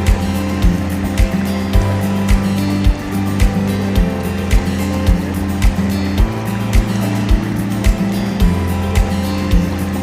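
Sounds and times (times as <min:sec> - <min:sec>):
kick drum beat: 0:00.1 - 0:09.7.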